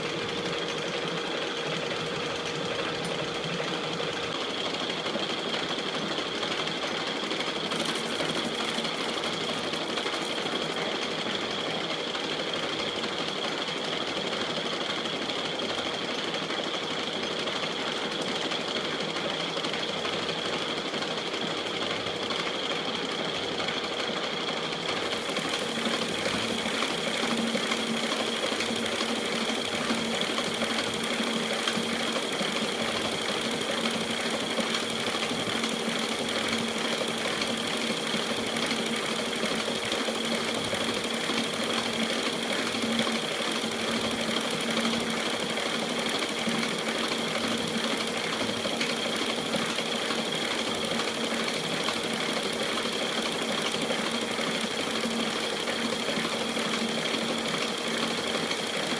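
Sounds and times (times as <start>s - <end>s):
lathe running: 0.0s - 58.9s.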